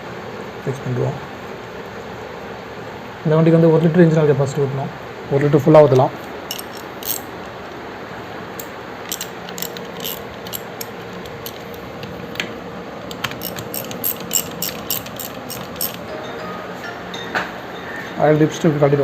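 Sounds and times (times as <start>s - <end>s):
steady background hum: 0.0s - 19.0s
hand tools clicking on metal: 5.9s - 7.6s, 8.6s - 16.1s.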